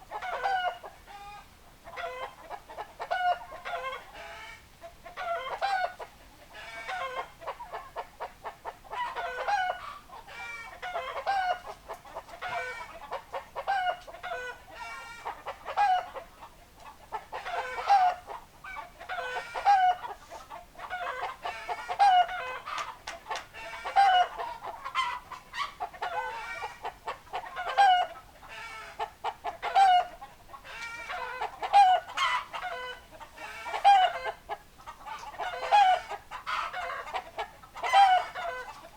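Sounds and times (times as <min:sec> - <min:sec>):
chickens clucking: 0:00.0 - 0:38.9.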